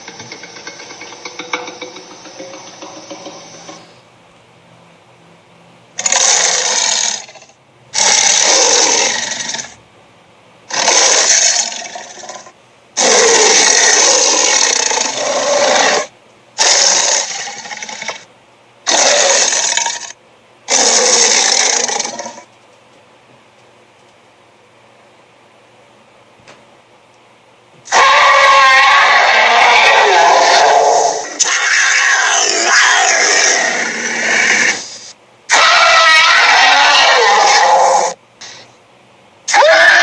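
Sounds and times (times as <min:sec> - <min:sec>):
harsh cartoon sound effects: 0:27.9 - 0:38.6, 0:39.5 - 0:40.0.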